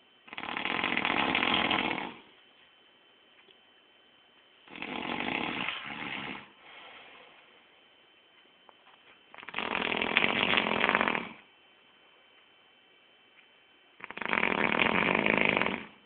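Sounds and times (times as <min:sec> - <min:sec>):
man snoring: 0:00.3 - 0:02.3, 0:04.7 - 0:06.6, 0:09.3 - 0:11.4, 0:14.0 - 0:16.0
soft breath: 0:05.4 - 0:07.8.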